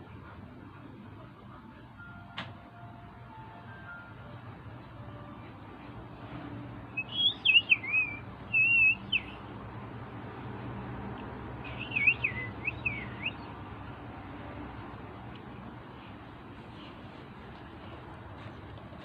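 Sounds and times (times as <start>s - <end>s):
budgerigar chirping: 7.0s - 9.4s, 11.7s - 13.5s.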